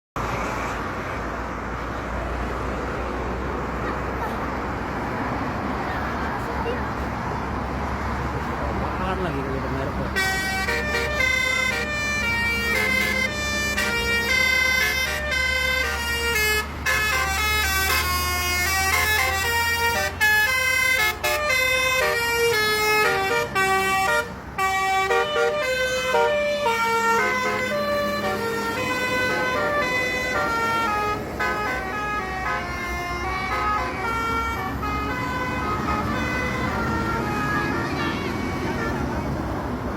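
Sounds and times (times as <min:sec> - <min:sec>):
bus engine running: 0:00.2 - 0:39.9
musical air horn tune: 0:10.2 - 0:39.2.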